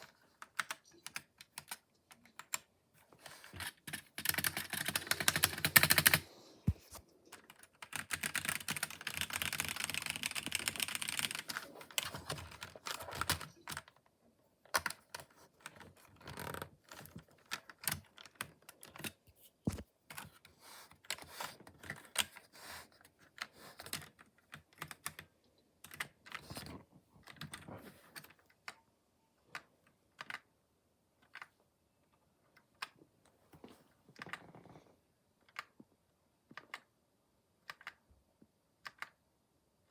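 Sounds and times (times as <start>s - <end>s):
mechanical keyboard typing: 0.0s - 2.7s, 3.5s - 6.3s, 7.3s - 14.0s, 14.7s - 19.2s, 23.3s - 26.6s, 30.2s - 30.5s.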